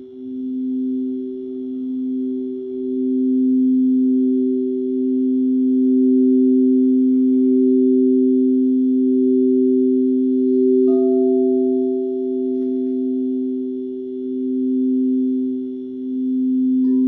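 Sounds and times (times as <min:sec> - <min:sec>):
singing bowls ringing: 0:00.0 - 0:17.0.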